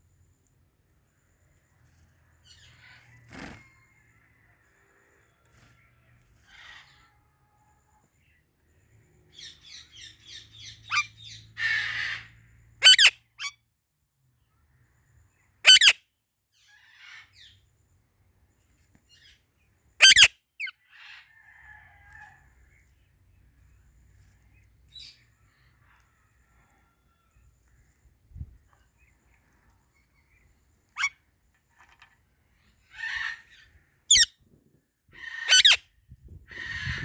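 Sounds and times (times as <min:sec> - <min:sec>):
parrot chirps: 0:09.4 - 0:13.6, 0:15.6 - 0:16.0, 0:20.0 - 0:21.3, 0:30.9 - 0:31.2, 0:32.9 - 0:34.4, 0:35.2 - 0:35.9
parrot rasping squawk: 0:11.6 - 0:13.5, 0:15.7 - 0:16.0, 0:20.0 - 0:20.3, 0:35.2 - 0:35.8
parrot shrill screeches: 0:11.6 - 0:13.5, 0:15.6 - 0:16.0, 0:20.0 - 0:20.3, 0:34.1 - 0:34.3, 0:35.2 - 0:35.8.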